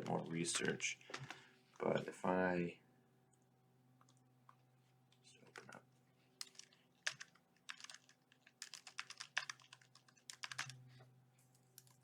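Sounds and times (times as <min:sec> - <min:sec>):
keyboard typing: 0:06.4 - 0:10.8, 0:11.7 - 0:12.0.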